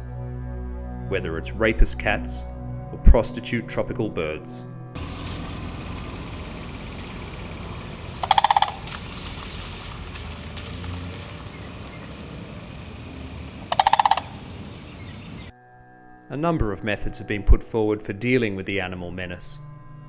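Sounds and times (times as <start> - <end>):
outdoor background noise: 4.9 - 15.5
rattling bird calls: 5.0 - 15.5.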